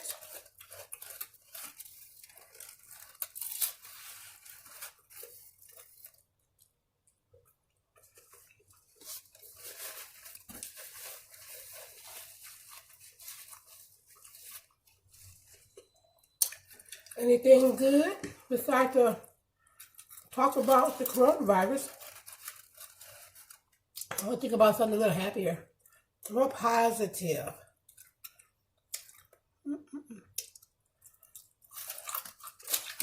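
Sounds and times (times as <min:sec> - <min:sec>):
person chewing crunchy food: 0:00.0 - 0:17.2, 0:27.8 - 0:29.5, 0:30.2 - 0:33.0.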